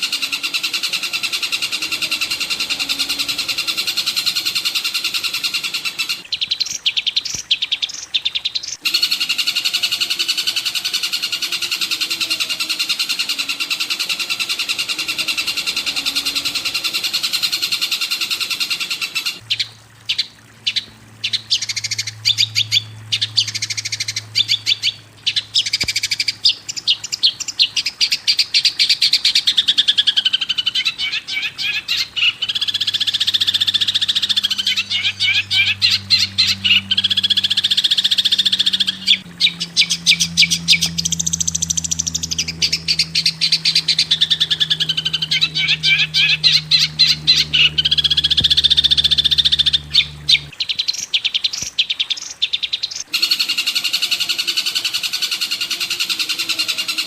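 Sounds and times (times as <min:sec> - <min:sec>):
low steady hum: 0:00.0 - 0:06.4, 0:08.8 - 0:27.7, 0:31.8 - 0:50.6
songbird chattering song: 0:00.0 - 0:57.0.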